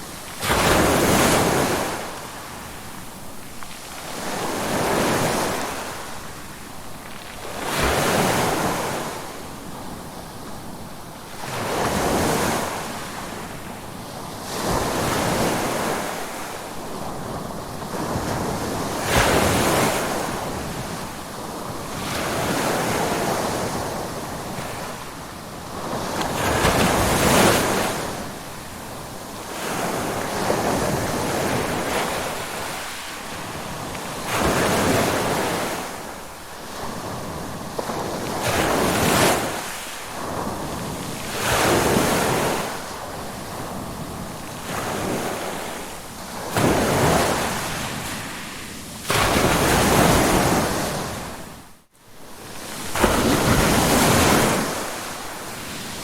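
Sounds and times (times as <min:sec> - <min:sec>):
ocean waves breaking: 0:14.4 - 0:51.6, 0:52.4 - 0:56.0.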